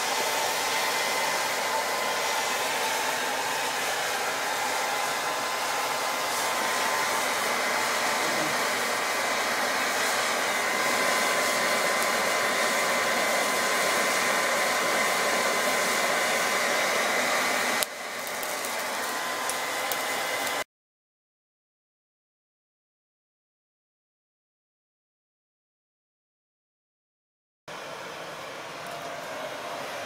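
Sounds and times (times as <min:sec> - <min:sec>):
electric blower whining: 0:00.0 - 0:20.6.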